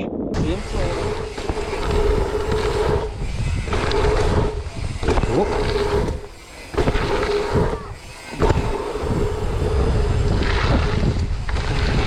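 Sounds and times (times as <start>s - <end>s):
wind buffeting microphone: 0.0s - 12.0s
bike rolling with steady buzz: 0.4s - 12.0s
sharp thud of bike landing: 3.6s - 9.1s.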